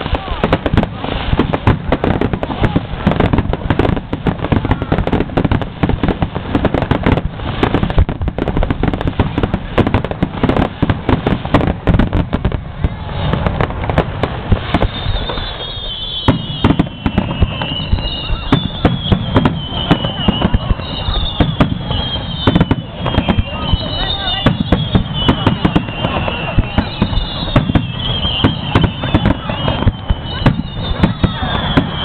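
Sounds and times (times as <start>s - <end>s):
fireworks bangs and crackles: 0.0s - 32.0s.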